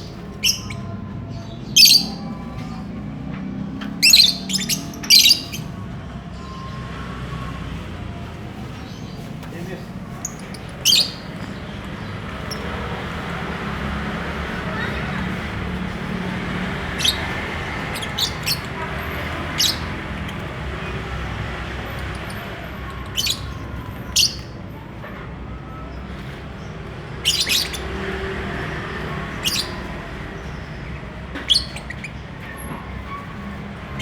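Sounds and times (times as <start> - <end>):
lovebirds chirping: 0.0 - 34.0.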